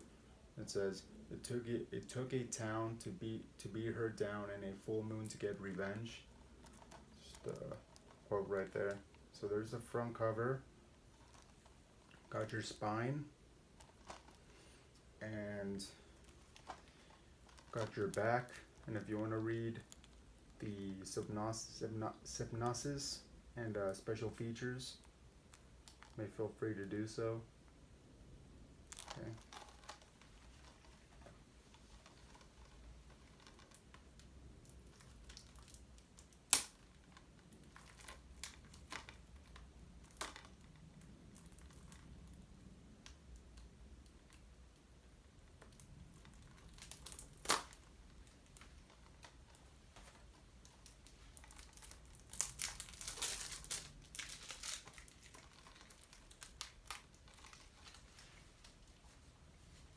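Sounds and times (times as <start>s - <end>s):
plastic wrap tearing and crinkling: 11.1s - 12.8s, 13.7s - 14.8s, 15.9s - 20.2s, 25.0s - 26.2s, 28.8s - 42.4s, 45.5s - 59.3s.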